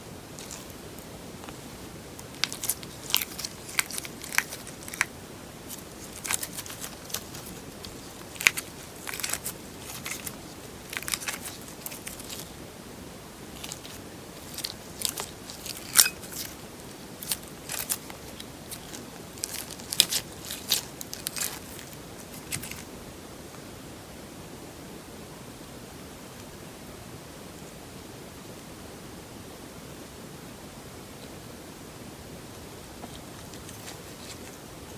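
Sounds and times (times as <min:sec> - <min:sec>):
low hiss: 0:00.0 - 0:34.9
slime crackling and popping: 0:02.2 - 0:05.1, 0:05.7 - 0:12.6, 0:13.6 - 0:22.9.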